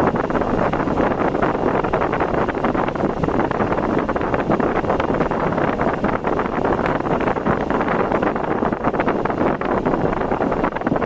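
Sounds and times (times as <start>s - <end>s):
car road noise: 0.0s - 11.0s
wind rushing across microphone: 0.0s - 11.0s.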